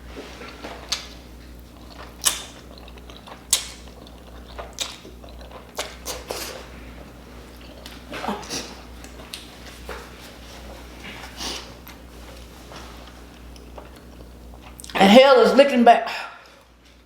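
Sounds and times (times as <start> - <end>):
wet mouth smacks and clicks: 2.1 - 5.2.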